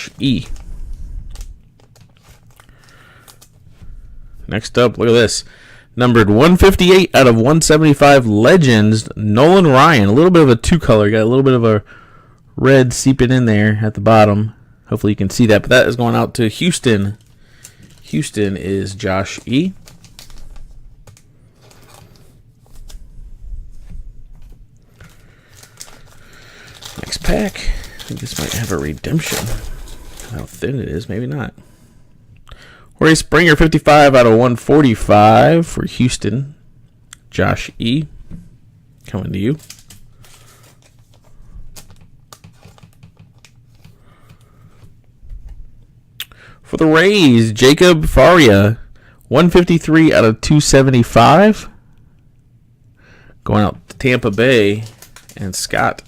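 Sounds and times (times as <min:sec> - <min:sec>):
steady low hum: 0:00.0 - 0:09.2, 0:13.7 - 0:33.3
cards rustling and clicking: 0:01.3 - 0:03.6, 0:16.1 - 0:23.1, 0:23.8 - 0:30.6, 0:39.4 - 0:45.0, 0:53.9 - 0:56.0
cards clicking and tapping: 0:41.8 - 0:44.5.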